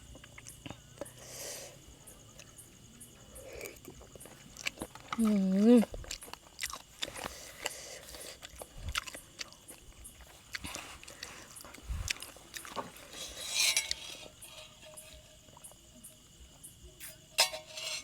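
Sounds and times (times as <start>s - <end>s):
person chewing and crunching: 0.0s - 1.3s, 3.4s - 15.8s
crickets chirping: 0.0s - 18.0s.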